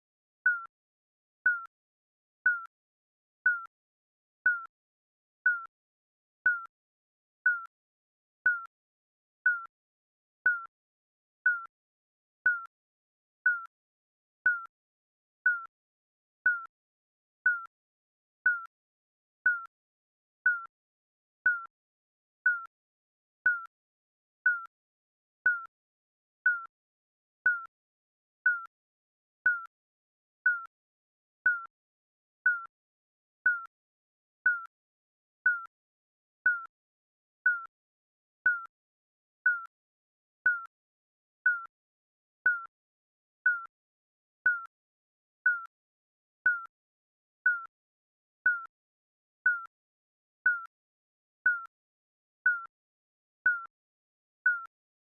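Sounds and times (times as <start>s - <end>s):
countdown timer beeps: 0.5s - 0.7s, 2.5s - 2.7s, 3.5s - 3.7s, 6.5s - 6.7s, 7.5s - 7.7s, 8.5s - 8.7s, 9.5s - 9.7s, 10.5s - 10.7s, 11.5s - 11.7s, 13.5s - 13.7s, 17.5s - 17.7s, 21.5s - 21.7s, 24.5s - 24.7s, 29.5s - 29.7s, 31.5s - 31.7s, 33.5s - 33.7s, 34.5s - 34.7s, 35.5s - 35.7s, 38.5s - 38.7s, 39.5s - 39.7s, 41.5s - 41.7s, 42.5s - 42.7s, 43.5s - 43.7s, 45.5s - 45.7s, 49.5s - 49.7s, 54.5s - 54.7s.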